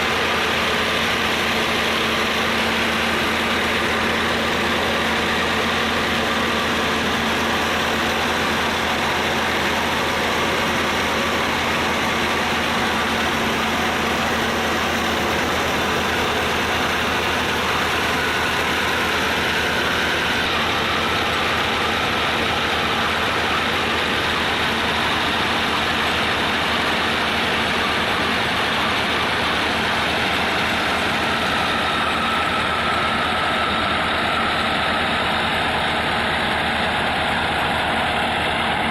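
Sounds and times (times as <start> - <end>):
tractor engine driving grinding mill: 0.0 - 38.9.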